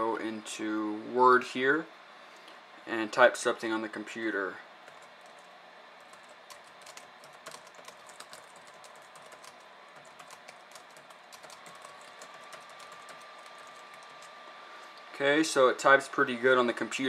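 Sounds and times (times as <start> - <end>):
keyboard typing clicks: 6.1 - 14.4.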